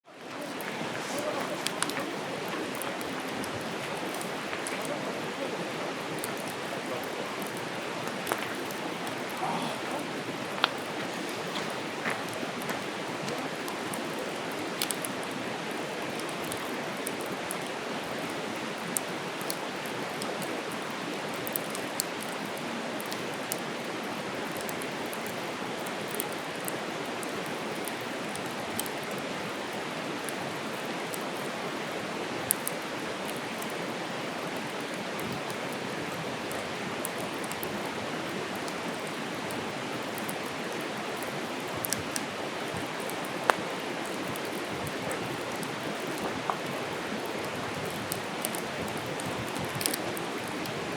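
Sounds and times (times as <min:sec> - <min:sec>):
campfire crackling and popping: 0:00.2 - 0:50.9
fire rushing hiss: 0:00.4 - 0:17.2.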